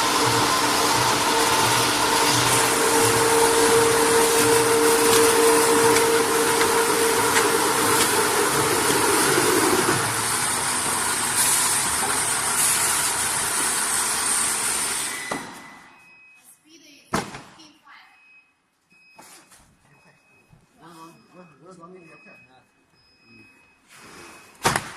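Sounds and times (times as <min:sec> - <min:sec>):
veneer lathe peeling log: 0:00.0 - 0:15.0.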